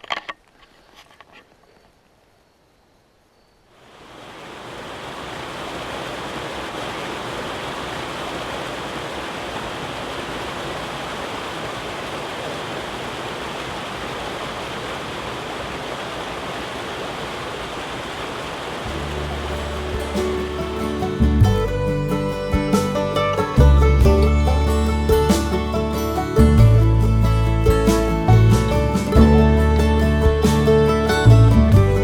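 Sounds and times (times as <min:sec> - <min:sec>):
river rushing over rocks: 0:03.8 - 0:22.4.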